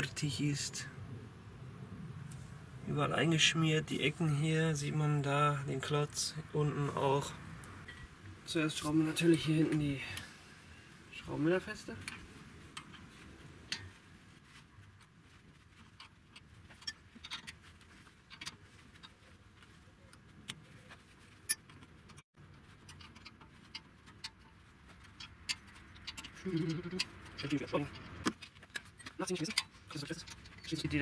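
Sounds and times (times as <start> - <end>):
hand tools clicking on bolts: 21.4 - 31.0.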